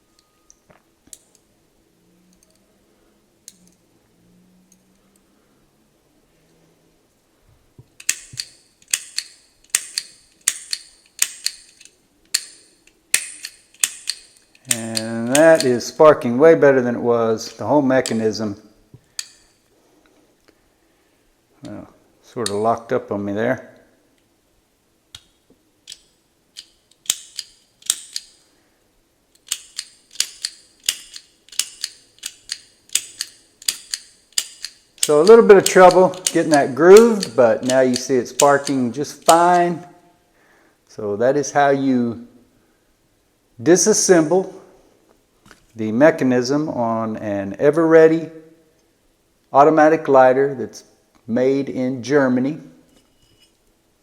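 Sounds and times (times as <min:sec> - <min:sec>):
lighter mechanism clicking: 0:08.0 - 0:15.7, 0:29.4 - 0:39.4.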